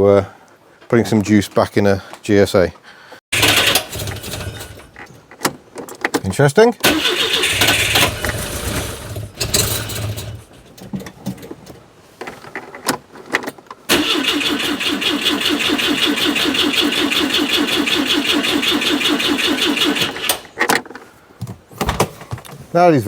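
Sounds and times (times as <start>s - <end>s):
starter motor cranking: 3.4s - 5.0s, 6.8s - 10.5s, 13.9s - 20.6s.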